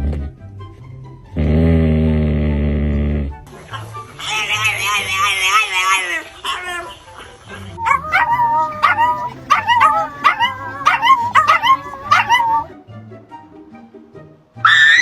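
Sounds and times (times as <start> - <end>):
dog yelping barks: 7.8 - 12.7.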